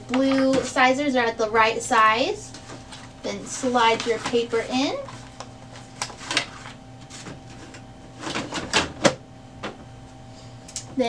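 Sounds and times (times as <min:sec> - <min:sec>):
paper rustling: 0:02.6 - 0:08.6.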